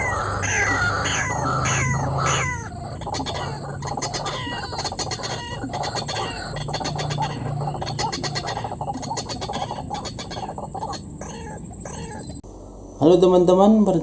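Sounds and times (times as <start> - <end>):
birds making harsh croaking calls: 0.0 - 13.0.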